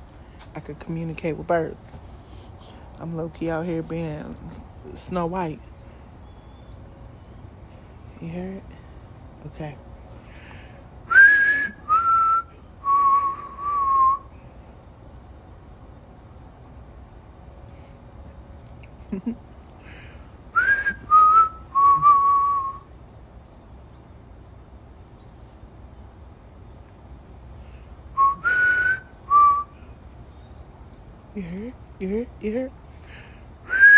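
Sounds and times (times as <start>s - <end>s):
faint high bird chirps: 5.6s - 6.8s, 12.6s - 12.9s, 15.2s - 16.4s, 26.7s - 31.9s
person whistling: 11.1s - 14.3s, 20.6s - 22.8s, 28.2s - 29.7s, 33.7s - 33.9s.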